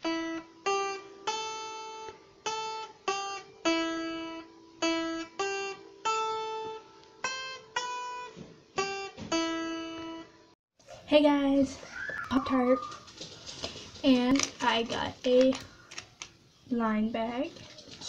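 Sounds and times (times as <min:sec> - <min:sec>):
slow acoustic guitar melody: 0:00.0 - 0:10.4.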